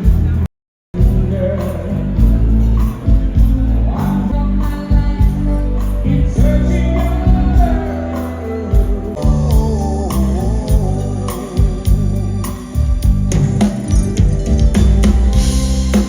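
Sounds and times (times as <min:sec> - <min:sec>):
band music with drums and bass: 0:00.0 - 0:16.0
person singing: 0:01.0 - 0:13.5.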